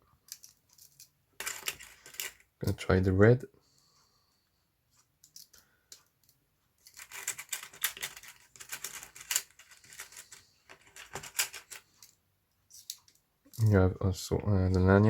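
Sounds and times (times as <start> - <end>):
plastic parts clicking and rattling: 0.2 - 2.5, 5.2 - 13.7.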